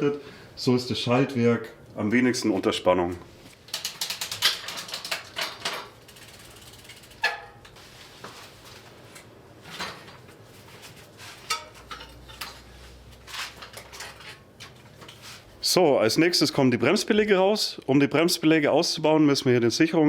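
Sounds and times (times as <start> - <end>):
bicycle wheel metal clicks: 3.7 - 7.8.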